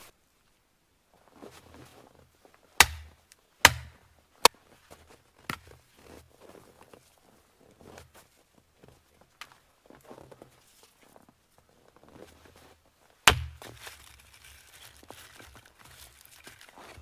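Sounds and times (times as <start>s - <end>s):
rustling and handling noises: 4.7s - 17.0s.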